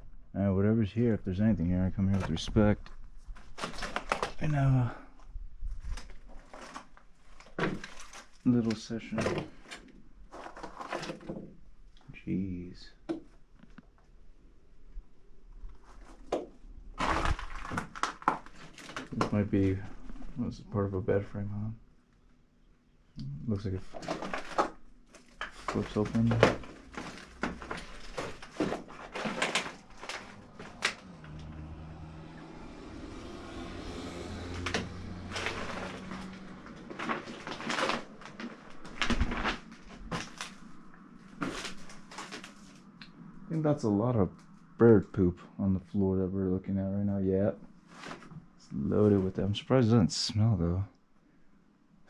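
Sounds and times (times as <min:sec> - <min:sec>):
wood creaking: 0:01.3 - 0:12.0, 0:15.7 - 0:20.6, 0:23.6 - 0:43.2
debris crunching and knocking: 0:02.0 - 0:04.7, 0:05.6 - 0:11.6, 0:16.0 - 0:20.4, 0:23.8 - 0:31.4, 0:34.4 - 0:42.8
scraping: 0:23.8 - 0:32.7, 0:33.4 - 0:42.9.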